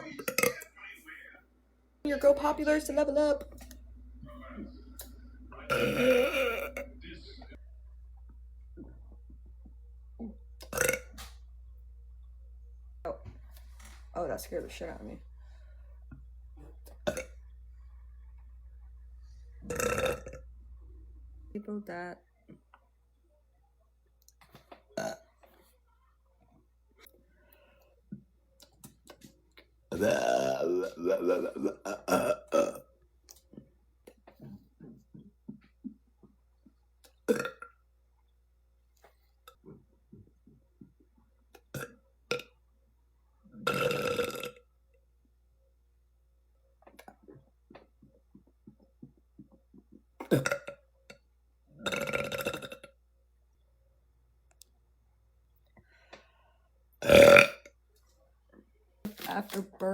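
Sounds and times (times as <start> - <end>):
woman burping loudly: 5.7 - 7.0, 10.2 - 11.2, 17.0 - 17.4, 19.6 - 20.4, 25.0 - 25.2, 29.9 - 32.9, 37.3 - 37.7, 43.6 - 44.6, 50.2 - 50.8, 51.8 - 52.9, 57.0 - 57.7.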